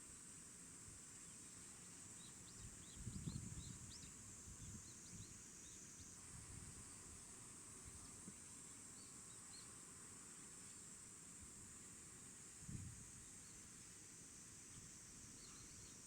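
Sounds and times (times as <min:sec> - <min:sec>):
wind rumble on microphone: 0:02.9 - 0:05.2, 0:12.7 - 0:13.0.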